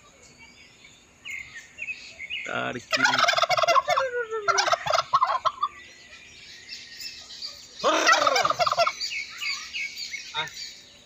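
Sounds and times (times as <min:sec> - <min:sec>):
faint chirps: 0:00.0 - 0:11.0
turkeys gobbling: 0:02.9 - 0:06.2, 0:07.0 - 0:09.7.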